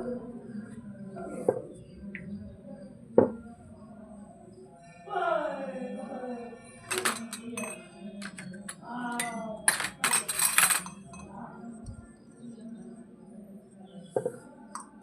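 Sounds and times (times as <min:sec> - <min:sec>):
plastic toy pieces clicking: 0:06.9 - 0:07.6, 0:08.2 - 0:11.0.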